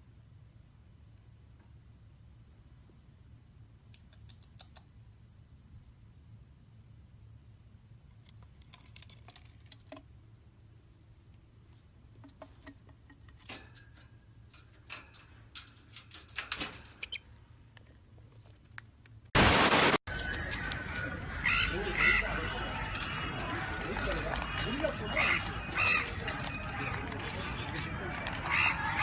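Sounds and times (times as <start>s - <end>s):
light scratching and tapping: 8.1s - 10.1s, 11.3s - 19.3s
loud burst of noise: 19.4s - 20.3s.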